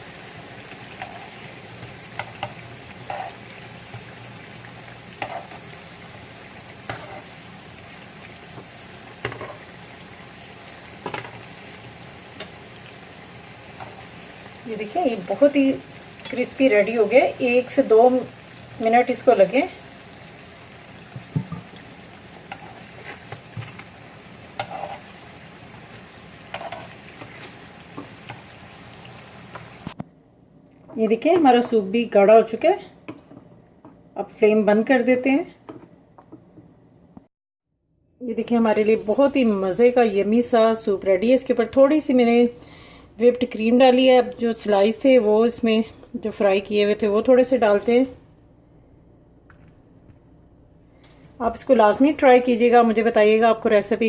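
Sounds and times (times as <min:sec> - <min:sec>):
bread sizzling in hot oil: 0:00.0 - 0:30.0
spoon scraping a pan: 0:00.9 - 0:04.1, 0:05.1 - 0:05.6, 0:06.8 - 0:07.4, 0:09.2 - 0:09.7, 0:22.4 - 0:25.2, 0:26.5 - 0:28.4.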